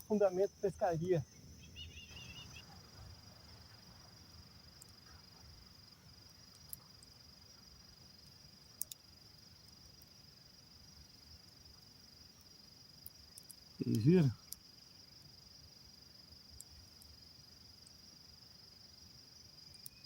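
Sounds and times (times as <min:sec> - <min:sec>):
faint insect trill: 0:00.0 - 0:20.0
faint clicks: 0:04.8 - 0:05.2, 0:08.8 - 0:09.0, 0:12.4 - 0:14.7, 0:19.6 - 0:20.0.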